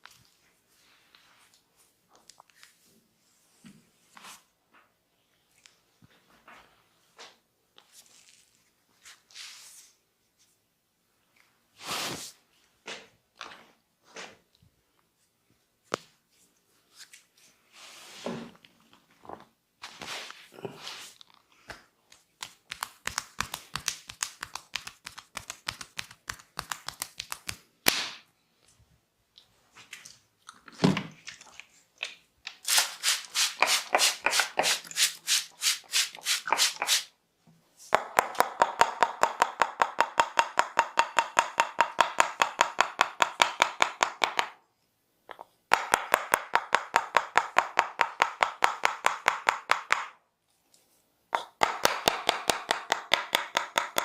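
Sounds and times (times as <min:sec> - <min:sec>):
hands slapping body in massage: 0:21.7 - 0:28.3.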